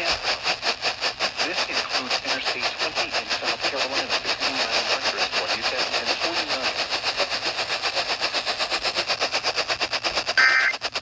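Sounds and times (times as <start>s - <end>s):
pulsing buzzing interference: 0.0s - 11.0s
faint radio voice: 1.4s - 6.8s
data tone burst: 10.4s - 10.8s.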